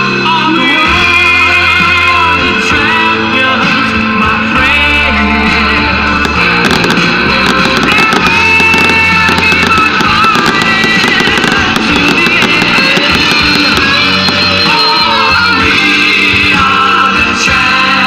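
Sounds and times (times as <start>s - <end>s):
rock music with guitar: 0.0s - 18.0s
fireworks crackling and popping: 5.4s - 16.6s.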